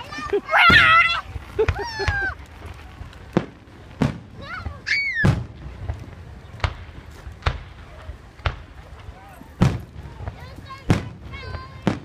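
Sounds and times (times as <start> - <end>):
small fireworks cracking: 0.0 - 12.0.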